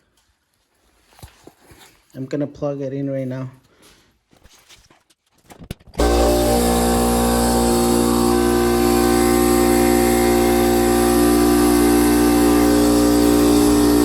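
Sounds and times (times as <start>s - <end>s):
air compressor running: 6.0s - 14.0s.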